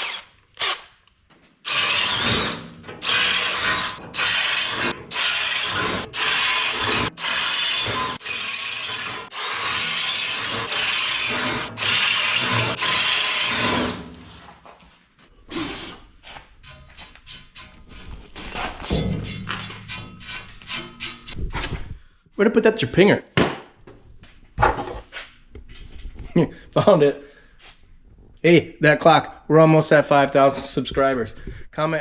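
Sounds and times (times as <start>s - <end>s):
power drill drilling metal: 0.0s - 0.9s, 1.6s - 14.4s.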